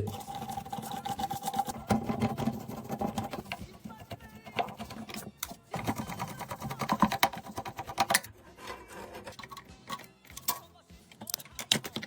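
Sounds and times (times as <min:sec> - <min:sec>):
plastic and metal parts rattling: 0:00.0 - 0:12.0.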